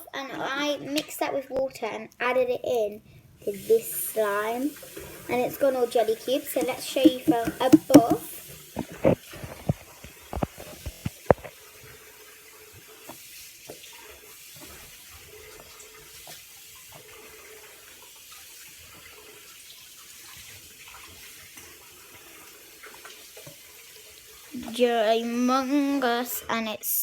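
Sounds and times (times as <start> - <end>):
slime squelching: 6.5 - 8.3
slime popping: 6.6 - 8.3.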